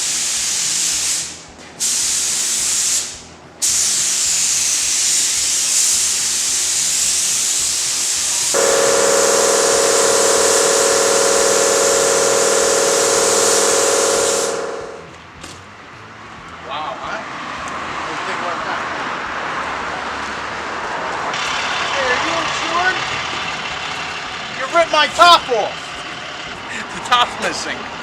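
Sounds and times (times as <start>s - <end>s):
air spray gun hissing: 0.0s - 15.1s
steady humming tone: 8.6s - 15.2s.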